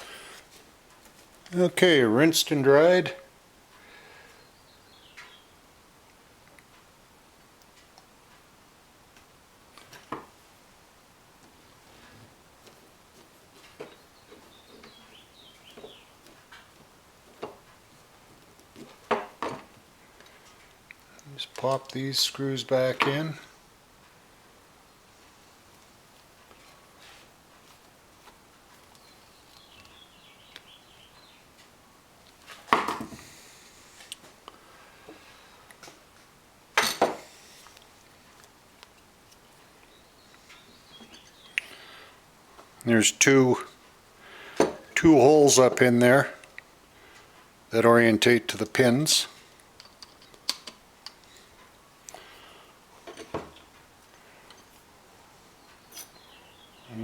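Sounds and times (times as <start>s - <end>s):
faucet parts clicking: 49.8s - 51.2s.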